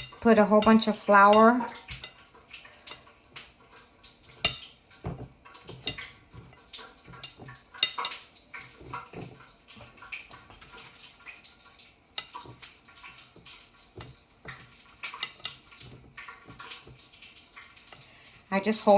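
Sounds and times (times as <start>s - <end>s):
kitchenware clinking: 0.0s - 2.3s, 4.3s - 11.2s, 12.1s - 17.2s.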